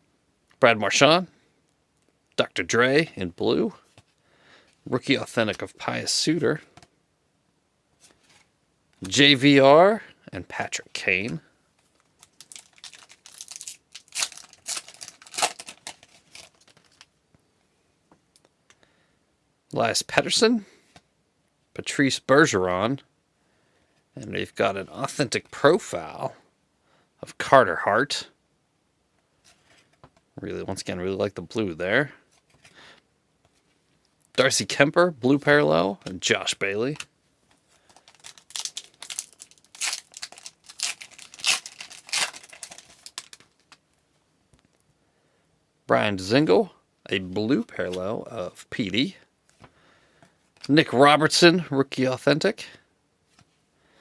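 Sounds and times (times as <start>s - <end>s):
foil wrapper crinkling and tearing: 12.0s - 17.1s, 37.7s - 43.8s.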